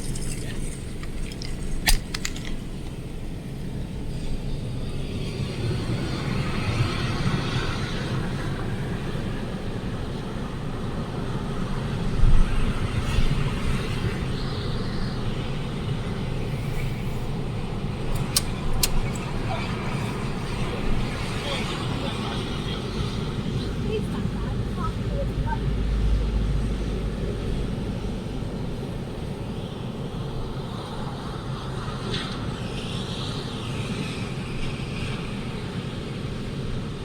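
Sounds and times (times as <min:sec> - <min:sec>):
wind buffeting microphone: 0:00.0 - 0:37.0.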